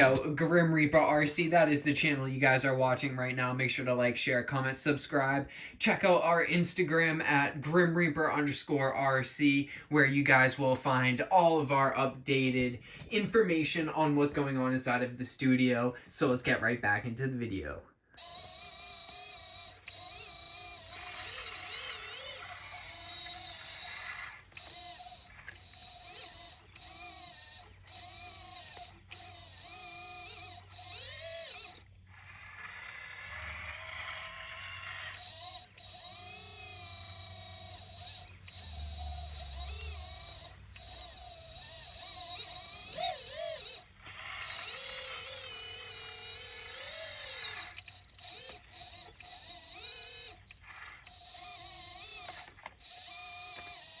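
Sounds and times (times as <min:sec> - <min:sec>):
electric whine of hydraulic pump: 0:00.0 - 0:03.6, 0:18.2 - 0:54.0.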